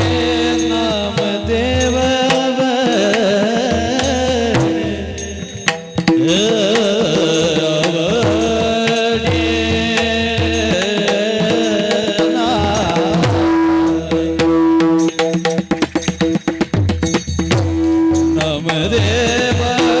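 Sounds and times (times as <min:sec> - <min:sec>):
person singing devotional melody: 0:00.0 - 0:15.6, 0:17.9 - 0:20.0
hand drum rhythm: 0:00.0 - 0:20.0
steady held tones: 0:11.4 - 0:20.0.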